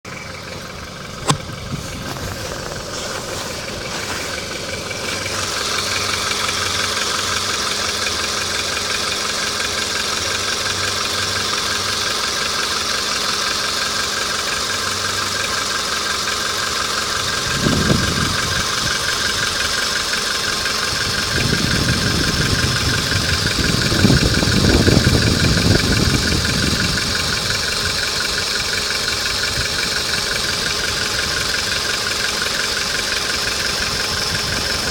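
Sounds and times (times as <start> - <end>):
low rumbling: 0.0 - 11.0
car engine idling with rhythmic knock: 0.0 - 34.9.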